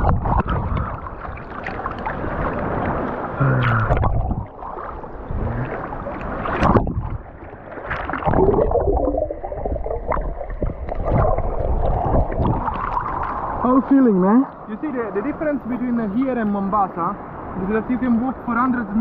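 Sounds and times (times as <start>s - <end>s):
sea water splashing: 0.0s - 15.8s.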